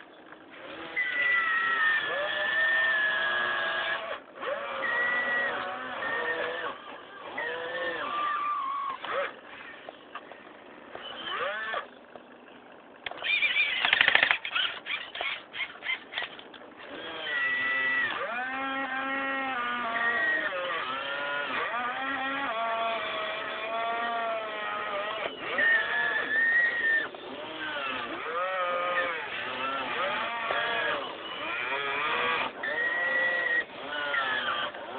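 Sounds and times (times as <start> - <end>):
small electric motors whining: 0.0 - 34.9
rapid clattering clicks: 13.0 - 16.7.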